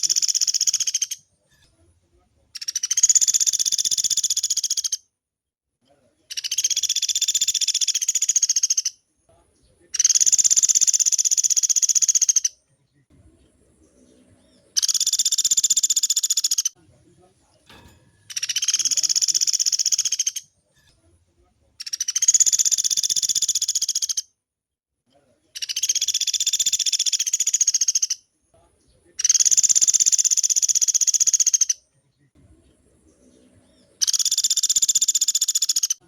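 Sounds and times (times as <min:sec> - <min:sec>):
woodpecker rattling trill: 0:00.0 - 0:01.2, 0:02.6 - 0:05.0, 0:06.3 - 0:09.0, 0:10.0 - 0:12.5, 0:14.8 - 0:16.8, 0:18.3 - 0:20.5, 0:21.8 - 0:24.2, 0:25.6 - 0:28.2, 0:29.2 - 0:31.8, 0:34.0 - 0:36.0.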